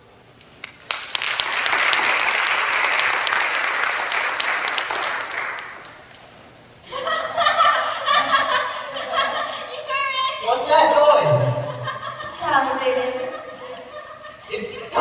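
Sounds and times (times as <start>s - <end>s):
audience applauding: 0.6s - 6.1s.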